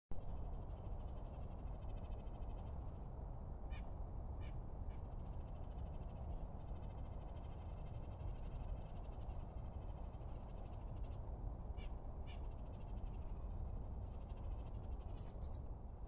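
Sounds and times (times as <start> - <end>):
birds chirping: 14.1 - 15.7.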